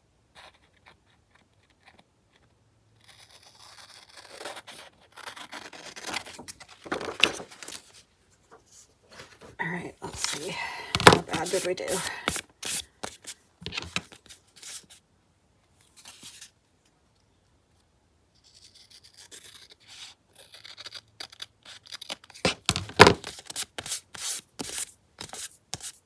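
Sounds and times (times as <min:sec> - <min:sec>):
paper rustling: 0:06.0 - 0:14.9, 0:22.5 - 0:26.0
paper tapping on table: 0:10.1 - 0:12.4, 0:13.0 - 0:14.0, 0:22.5 - 0:23.3.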